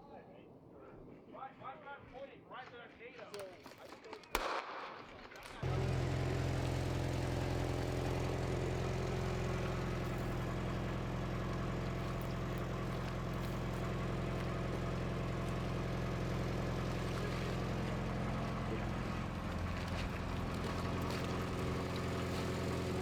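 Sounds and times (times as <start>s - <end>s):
vehicle engine droning: 5.6s - 23.0s.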